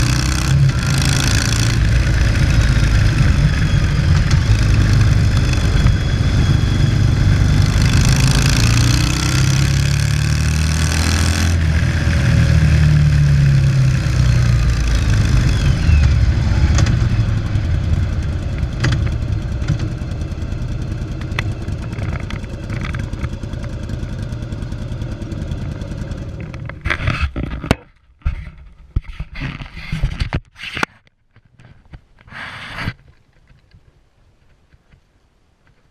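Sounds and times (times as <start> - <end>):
motorcycle engine revving: 0.0 - 27.0.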